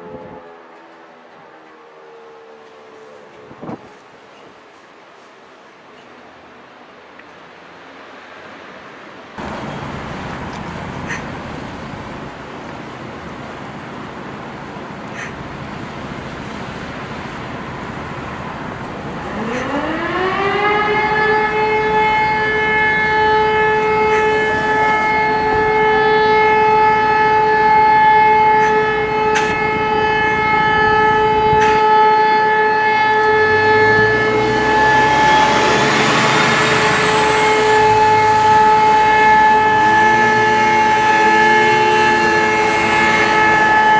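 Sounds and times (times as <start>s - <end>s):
warning siren winding up: 19.2s - 43.9s.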